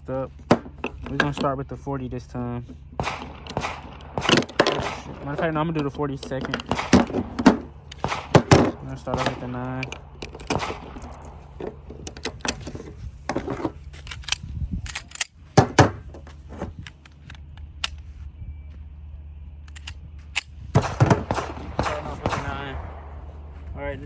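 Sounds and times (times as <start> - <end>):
steady low hum: 0.0 - 24.0
handling clicks and knocks: 0.4 - 1.6, 2.6 - 18.0
loud sharp bangs: 3.0 - 12.7, 20.7 - 23.6.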